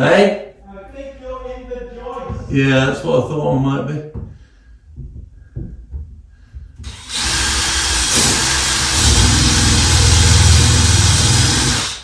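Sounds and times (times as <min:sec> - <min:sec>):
power drill boring into wood: 0:06.9 - 0:12.0.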